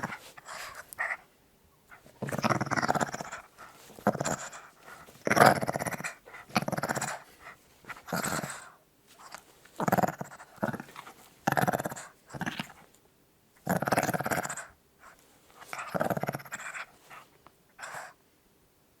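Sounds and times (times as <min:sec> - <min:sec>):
small dog growling: 0:00.0 - 0:01.2, 0:01.9 - 0:12.9, 0:13.6 - 0:14.8, 0:15.6 - 0:18.2.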